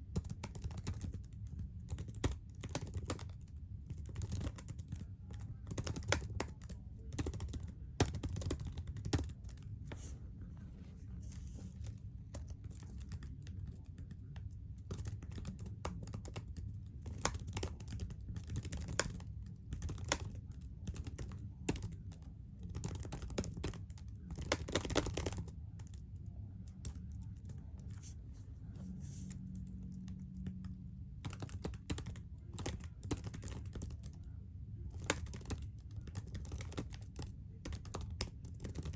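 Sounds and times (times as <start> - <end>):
keyboard keys clicking: 1.9 - 9.6, 14.9 - 26.0, 29.9 - 34.2, 34.9 - 38.9.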